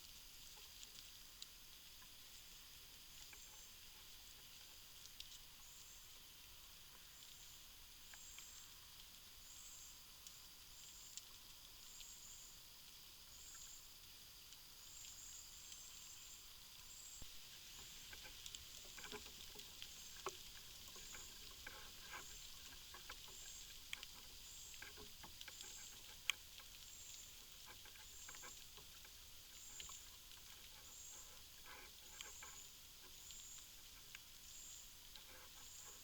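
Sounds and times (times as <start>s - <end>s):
small crackles and ticks: 0.0s - 36.0s.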